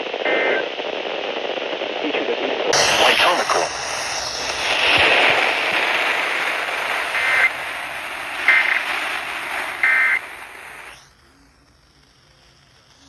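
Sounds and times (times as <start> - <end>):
radio static hiss: 0.0 - 13.0
alert data tone bursts: 7.0 - 10.4.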